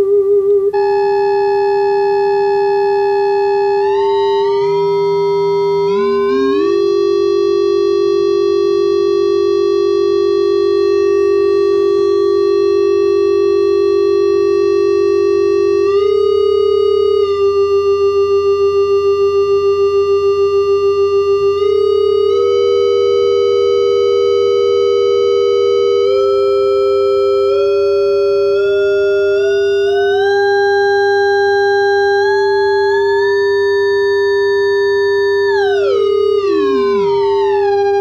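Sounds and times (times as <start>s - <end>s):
steady electronic tone: 3.7s - 8.3s, 29.9s - 38.0s
gliding electronic tone: 5.9s - 6.8s, 35.8s - 38.0s.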